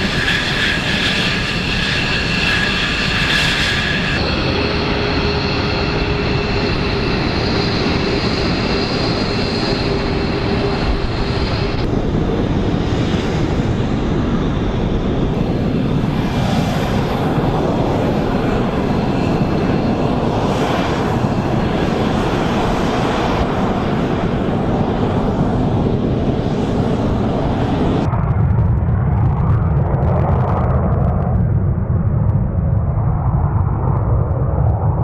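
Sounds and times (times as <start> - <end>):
fighter jet engine roar: 0.0 - 35.0.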